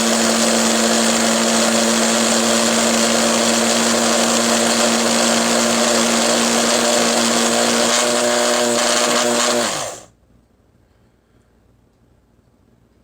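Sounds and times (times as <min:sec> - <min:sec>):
coffee grinder motor: 0:00.0 - 0:10.1.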